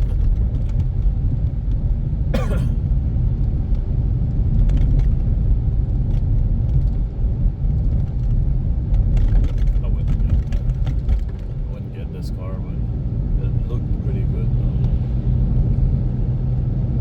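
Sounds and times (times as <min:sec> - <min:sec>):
car cabin road and engine rumble: 0:00.0 - 0:17.0.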